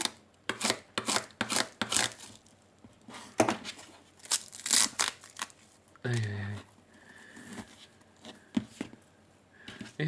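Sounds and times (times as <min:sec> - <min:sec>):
plastic packaging crinkling and tearing: 0:04.2 - 0:06.4.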